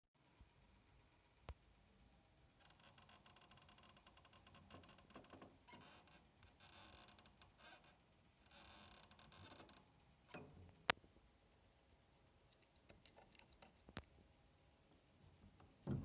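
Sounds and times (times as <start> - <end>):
faint creaking ticks: 2.5 - 11.1, 12.5 - 14.1.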